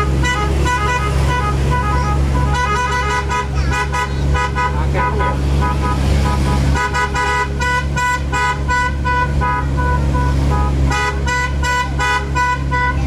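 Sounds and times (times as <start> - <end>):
low engine hum: 0.0 - 13.0
multi-tone horn tooting tune: 0.0 - 13.0.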